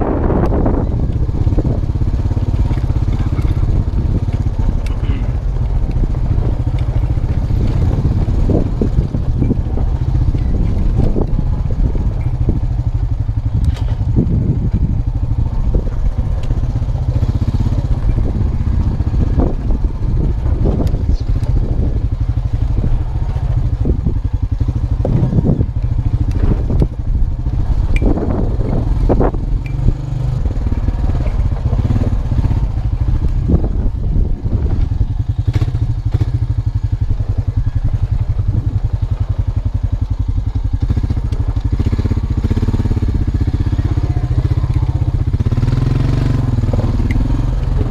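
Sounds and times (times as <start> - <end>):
engine droning with clatter: 0.0 - 47.9.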